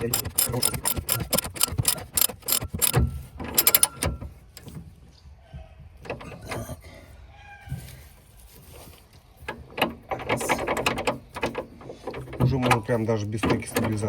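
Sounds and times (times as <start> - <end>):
ratchet wrench clicking: 0.0 - 4.1
metallic tool clicks and knocks: 0.0 - 4.2.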